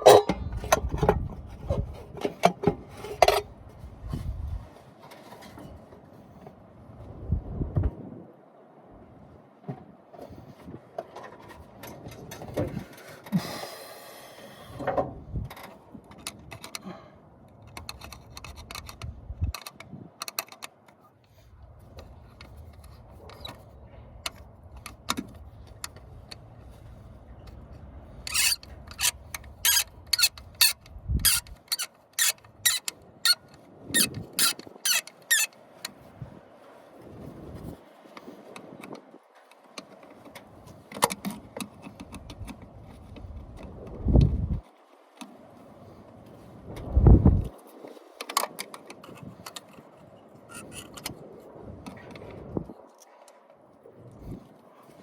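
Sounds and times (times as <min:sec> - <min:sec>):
hand tools on metal parts: 0:00.0 - 0:03.5, 0:17.6 - 0:21.0, 0:27.4 - 0:36.0
squeaky rubbing: 0:28.3 - 0:35.5.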